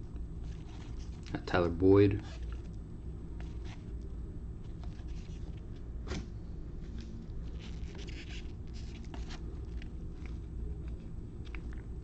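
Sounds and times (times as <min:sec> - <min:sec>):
steady low hum: 0:00.0 - 0:12.0
trading cards scraping and flicking: 0:00.4 - 0:01.4, 0:03.4 - 0:04.0, 0:04.6 - 0:11.6.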